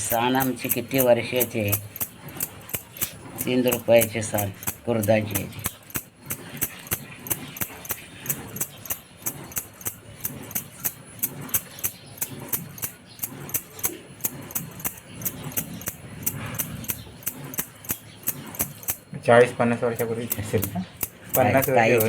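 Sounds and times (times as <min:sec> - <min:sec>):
rubbing paste on stone slab: 0:00.0 - 0:22.0.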